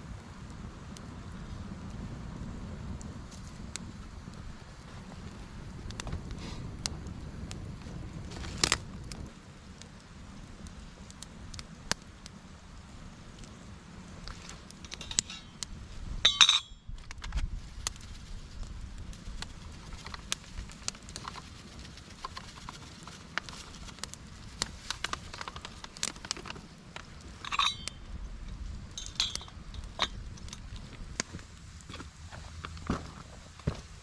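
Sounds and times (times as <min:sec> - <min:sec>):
campfire crackling and popping: 0:00.0 - 0:34.0
metallic clinks of cook gear: 0:14.8 - 0:15.6, 0:16.2 - 0:16.9, 0:27.4 - 0:30.6.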